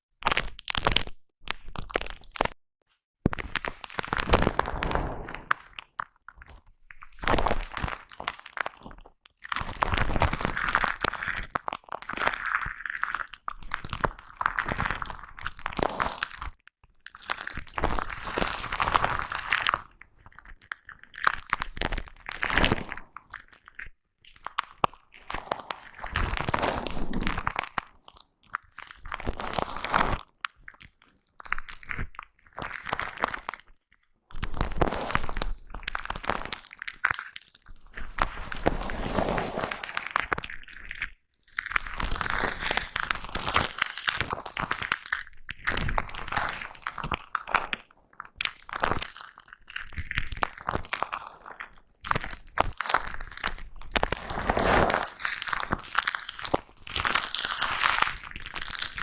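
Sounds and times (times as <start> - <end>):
foam microphone cover rustling: 38.0 - 40.2.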